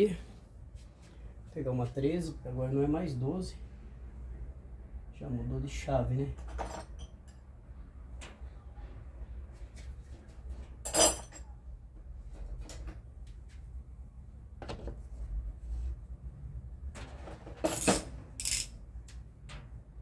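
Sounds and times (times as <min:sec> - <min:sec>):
metal hand tools clinking: 0:17.7 - 0:18.7.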